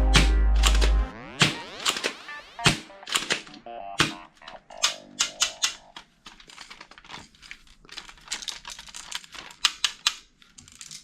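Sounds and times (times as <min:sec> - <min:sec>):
plastic toy gun parts clicking: 0:03.1 - 0:11.0.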